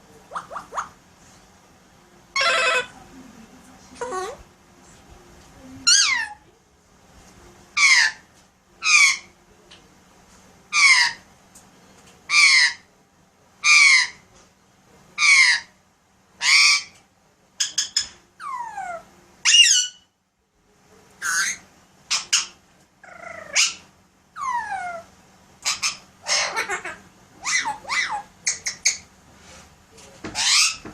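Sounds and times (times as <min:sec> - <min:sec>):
parakeet squawking: 0:00.3 - 0:01.0, 0:02.4 - 0:03.0, 0:05.8 - 0:06.4, 0:07.8 - 0:09.3, 0:10.7 - 0:11.2, 0:12.3 - 0:12.9, 0:13.6 - 0:14.2, 0:15.2 - 0:15.8, 0:16.4 - 0:17.0, 0:17.6 - 0:20.1, 0:21.2 - 0:29.1, 0:30.3 - 0:30.9.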